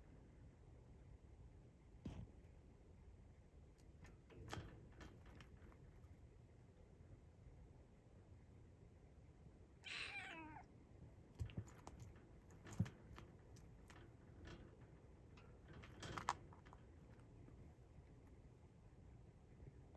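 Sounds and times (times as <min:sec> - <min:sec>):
kitten meowing: 0:09.8 - 0:10.7.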